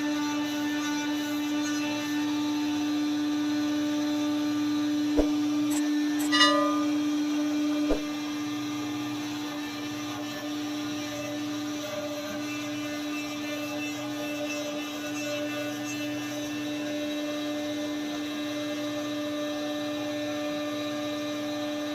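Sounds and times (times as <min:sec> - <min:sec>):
sawmill motor whine: 0:02.0 - 0:14.4.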